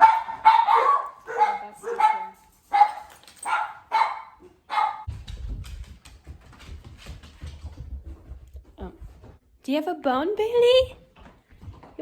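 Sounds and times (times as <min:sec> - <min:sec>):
dog barking: 0:00.0 - 0:05.1.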